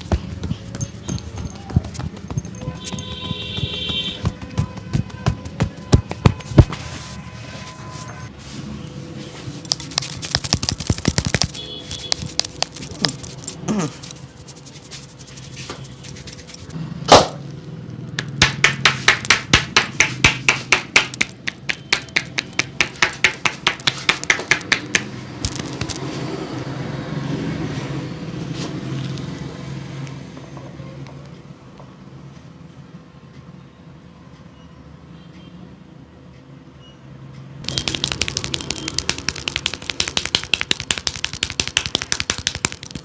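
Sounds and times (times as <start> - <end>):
street traffic hum: 0.0 - 43.0
hands slapping on body: 3.6 - 6.8, 9.7 - 13.6, 37.7 - 43.0.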